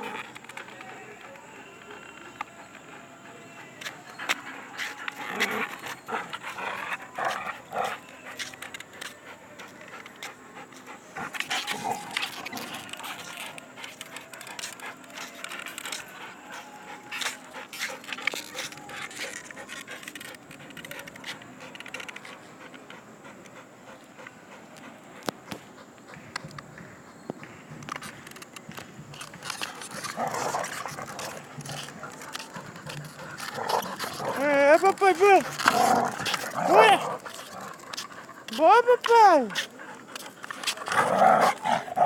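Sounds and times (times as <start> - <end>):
dog panting: 1.8 - 42.0.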